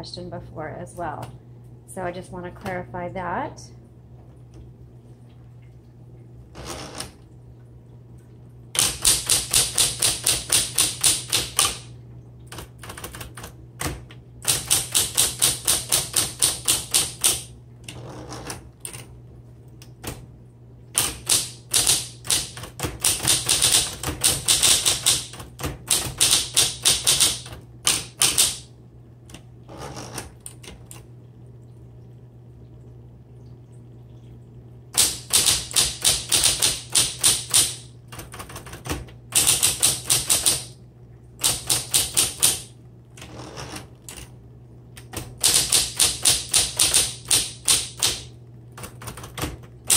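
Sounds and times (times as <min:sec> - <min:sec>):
steady low hum: 0:00.0 - 0:49.9
electric typewriter typing: 0:06.6 - 0:07.2, 0:08.8 - 0:19.1, 0:20.0 - 0:20.2, 0:20.9 - 0:28.7, 0:29.3 - 0:31.1, 0:34.9 - 0:40.8, 0:41.4 - 0:44.3, 0:45.0 - 0:49.9.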